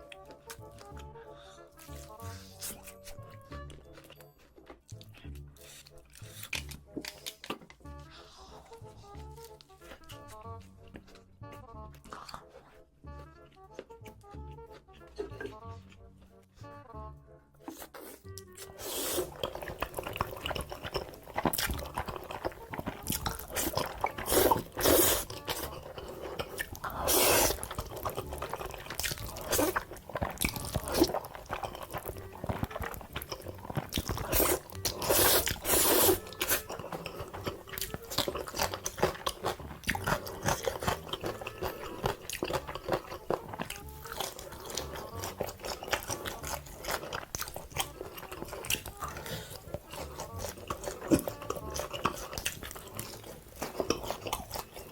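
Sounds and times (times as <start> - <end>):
crunchy bites and chewing: 1.8 - 16.4, 17.6 - 54.9.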